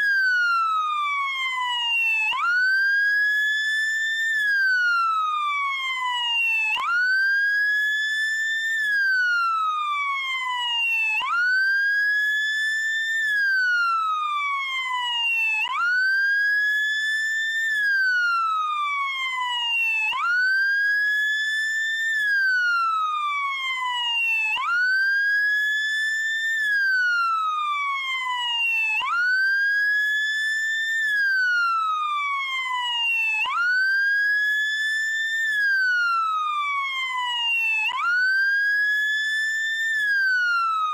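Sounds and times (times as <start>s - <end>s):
police siren wailing: 26.4s - 40.9s.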